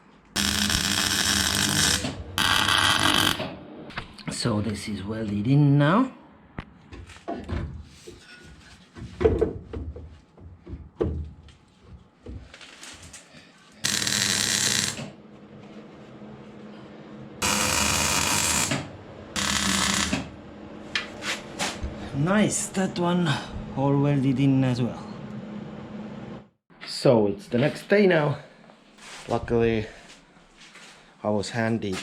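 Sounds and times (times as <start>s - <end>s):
welder hissing: 0.4s - 3.4s, 13.8s - 15.0s, 17.4s - 18.8s, 19.4s - 20.3s.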